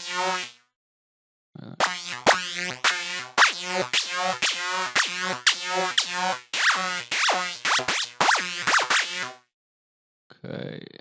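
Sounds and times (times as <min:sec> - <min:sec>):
synthesizer lead riff: 0:00.0 - 0:00.6, 0:01.8 - 0:09.4.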